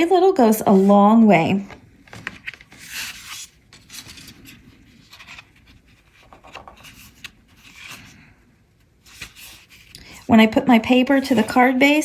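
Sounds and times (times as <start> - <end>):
paper rustling and scraping on card: 0.6 - 1.0, 2.1 - 8.4, 9.0 - 10.3, 11.0 - 12.0.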